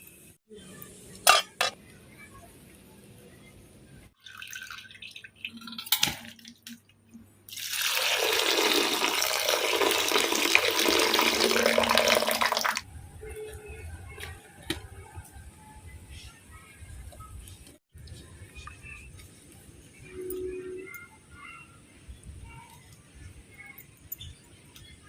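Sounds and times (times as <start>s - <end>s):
water pouring and splashing: 4.2s - 6.9s, 7.5s - 12.9s.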